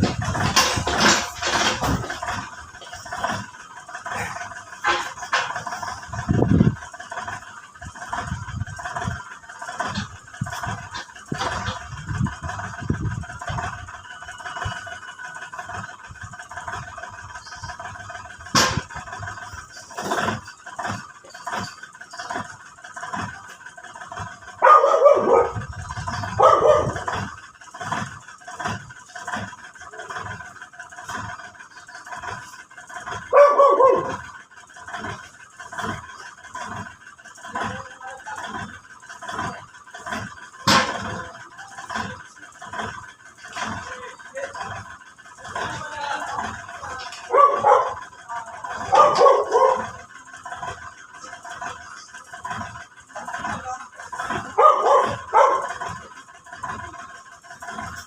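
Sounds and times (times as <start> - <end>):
dog barking: 24.6 - 25.6, 26.3 - 27.1, 33.3 - 34.2, 47.3 - 48.0, 48.7 - 50.0, 54.4 - 55.8.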